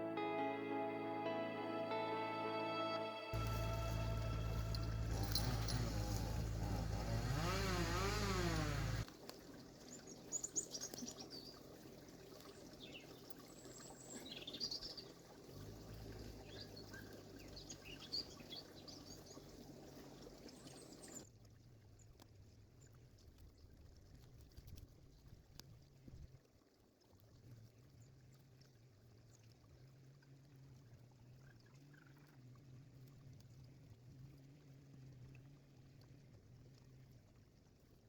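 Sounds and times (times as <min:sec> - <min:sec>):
background music: 0:00.0 - 0:08.8
low hum: 0:00.0 - 0:09.0.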